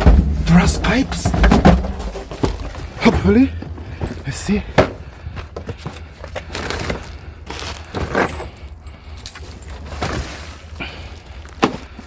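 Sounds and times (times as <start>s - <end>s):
scrap parts knocking and rattling: 0.0s - 7.1s.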